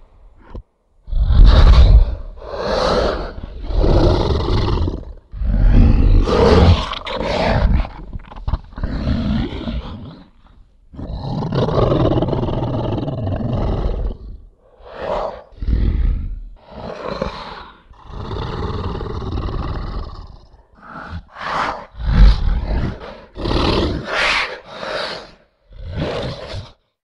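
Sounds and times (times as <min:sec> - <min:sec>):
monster roars: 0:01.1 - 0:10.1, 0:14.8 - 0:26.8.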